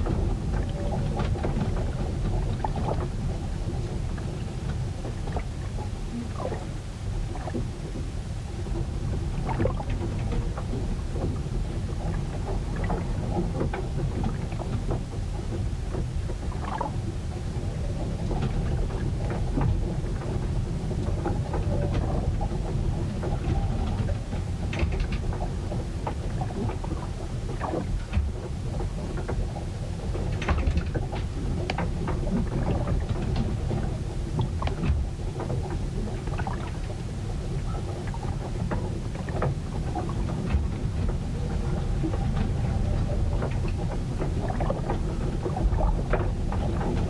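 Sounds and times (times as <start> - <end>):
rumble of wind and water: 0.0 - 47.0
wooden boat knocks and clicks: 18.2 - 37.0, 37.7 - 47.0.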